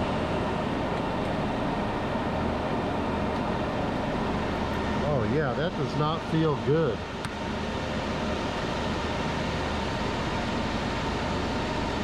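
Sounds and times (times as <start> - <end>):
mechanical whir with low hum: 0.0 - 12.0.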